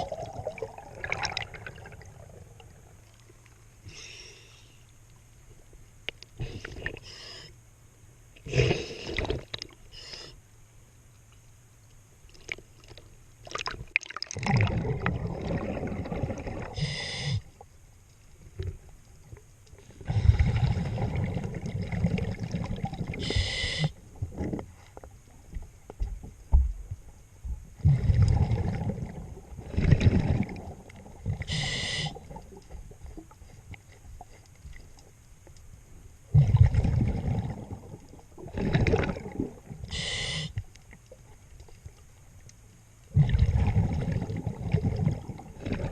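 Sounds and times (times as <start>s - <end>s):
exhaled bubbles rumbling: 0.0s - 3.4s, 13.4s - 17.0s, 20.0s - 24.8s, 25.5s - 33.4s, 36.2s - 40.0s, 43.1s - 45.9s.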